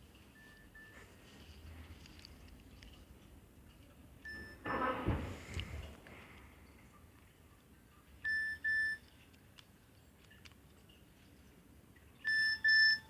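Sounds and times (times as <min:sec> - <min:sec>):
mobile phone beeps: 0:00.4 - 0:01.0, 0:04.3 - 0:04.6, 0:08.2 - 0:09.0, 0:12.3 - 0:13.0.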